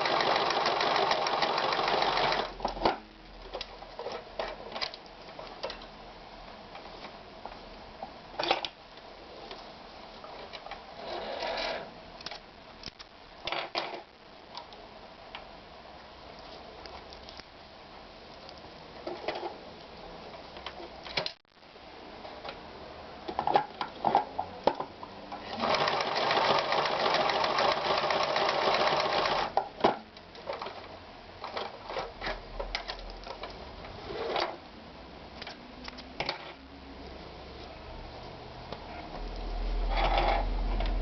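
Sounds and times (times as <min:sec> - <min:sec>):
sewing machine stitching: 0:00.0 - 0:02.5, 0:25.4 - 0:29.5.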